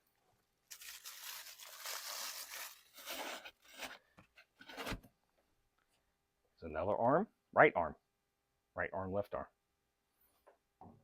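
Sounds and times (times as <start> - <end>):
packing material rustling and tearing: 0.7 - 4.0.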